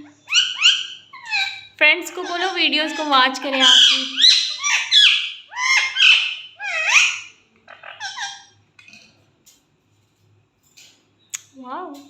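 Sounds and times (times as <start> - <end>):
parrot squawking: 0.0 - 8.6.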